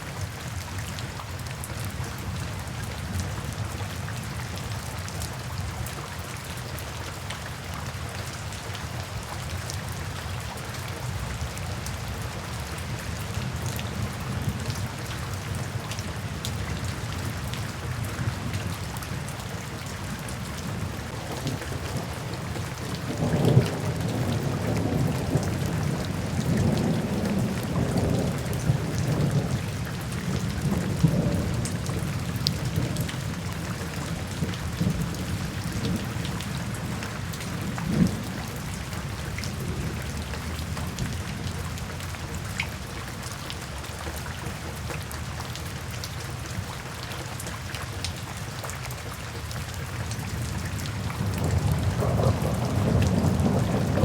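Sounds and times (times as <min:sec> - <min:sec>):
steady rain falling: 0:00.0 - 0:54.0
thunder rumbling: 0:51.2 - 0:54.0.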